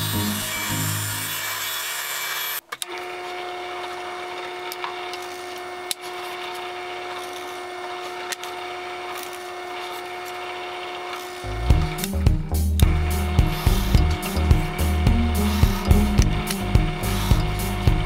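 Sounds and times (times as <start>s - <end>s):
workshop machine humming: 0.0s - 18.0s
clicks and knocks of tools: 2.7s - 3.0s.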